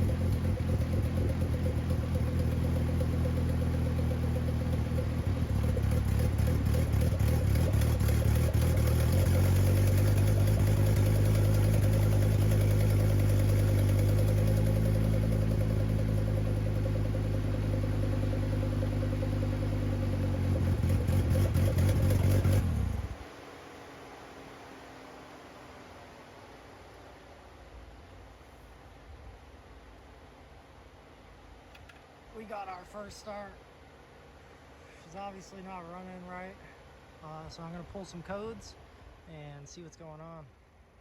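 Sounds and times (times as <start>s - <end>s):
car engine running roughly: 0.0s - 23.2s.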